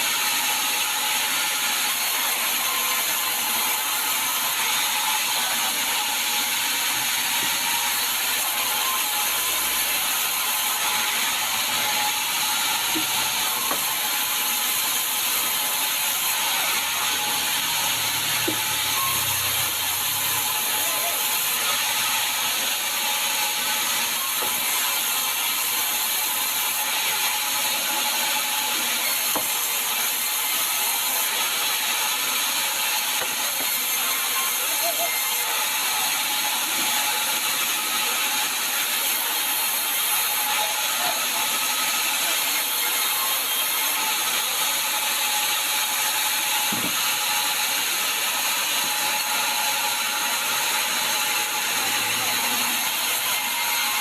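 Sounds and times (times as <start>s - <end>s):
sawmill saw running: 0.0s - 54.0s.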